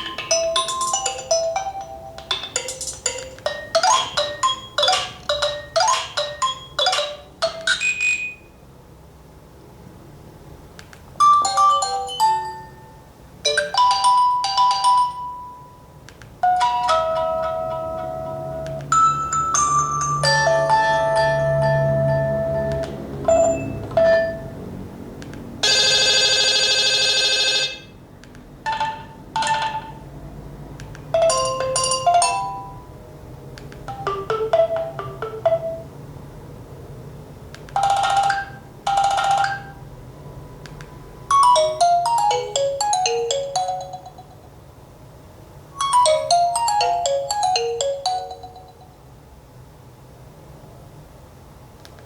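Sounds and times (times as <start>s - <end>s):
phone ringtones: 0.0s - 8.6s, 16.4s - 24.6s, 25.6s - 28.0s, 33.9s - 35.9s, 37.8s - 39.8s, 45.8s - 49.0s.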